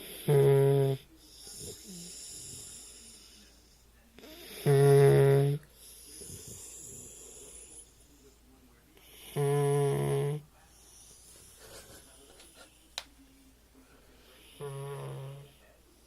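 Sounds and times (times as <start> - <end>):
dog snoring: 0.0 - 3.5, 4.2 - 7.9, 9.0 - 11.1, 14.2 - 15.8
dog breathing softly: 1.1 - 4.4, 5.7 - 9.4.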